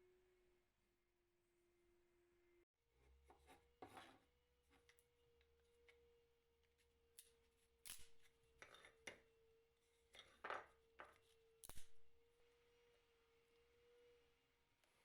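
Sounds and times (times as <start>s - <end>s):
hand tool scraping and knocking wood: 3.3s - 4.2s.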